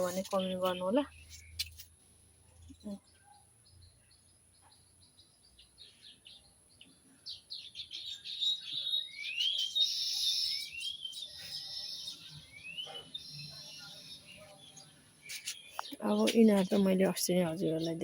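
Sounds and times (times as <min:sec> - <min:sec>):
small birds chirping: 0:00.0 - 0:18.0
rising whistled bird notes: 0:07.6 - 0:14.2.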